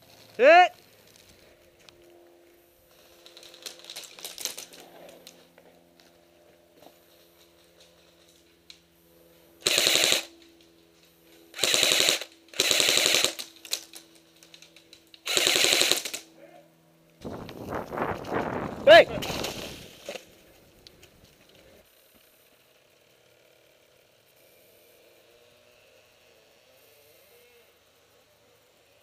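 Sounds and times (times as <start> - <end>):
airsoft rifle full-auto bursts: 9.6 - 10.3, 11.6 - 13.8, 15.2 - 16.2.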